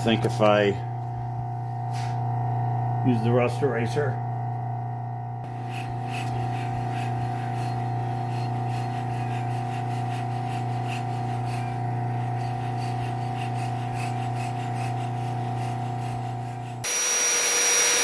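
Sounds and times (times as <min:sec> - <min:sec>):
steel abraded on grinder: 0:05.5 - 0:18.0
belt grinder humming: 0:16.8 - 0:18.0.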